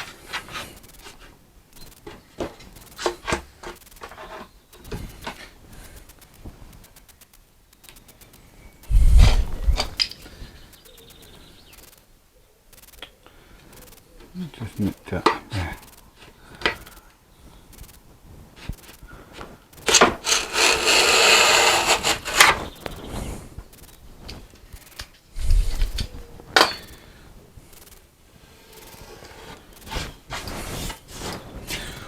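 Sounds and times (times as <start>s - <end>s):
tool scraping wooden board edge: 19.8s - 22.7s, 28.9s - 31.4s.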